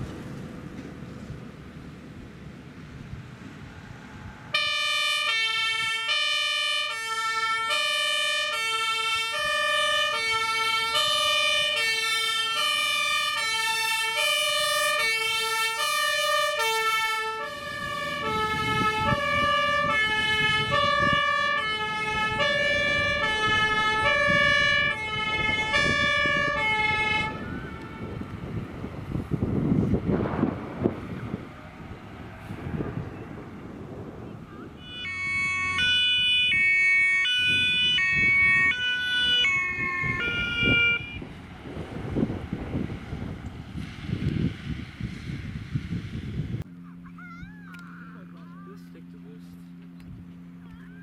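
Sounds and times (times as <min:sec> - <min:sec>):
vehicle engine and road noise: 0:00.0 - 0:51.0
two-tone siren: 0:04.2 - 0:31.4, 0:34.3 - 0:41.4.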